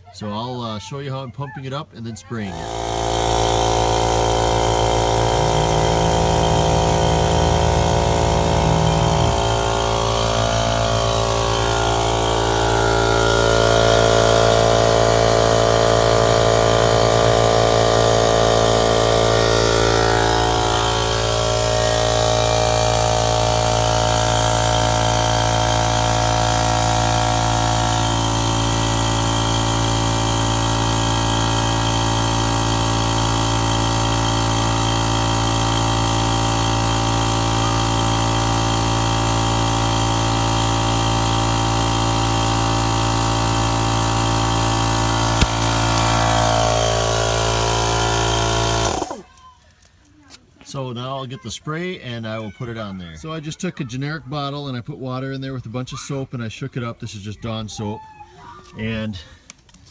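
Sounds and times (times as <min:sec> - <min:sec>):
air compressor humming: 0:02.4 - 0:49.3.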